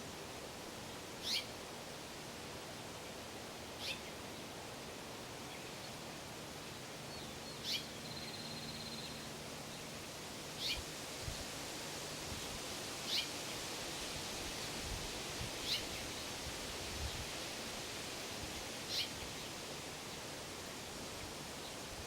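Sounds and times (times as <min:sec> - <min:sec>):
steady outdoor hiss: 0:00.0 - 0:22.0
bird chirping: 0:01.2 - 0:01.5, 0:07.1 - 0:09.2.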